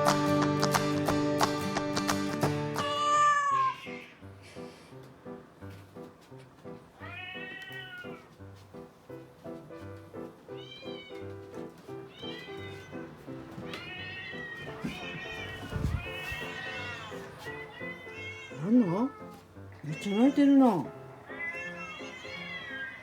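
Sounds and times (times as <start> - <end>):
background music with beat: 0.0 - 3.0
cat meowing: 2.8 - 4.2, 7.0 - 8.3, 10.5 - 11.4, 12.0 - 23.0.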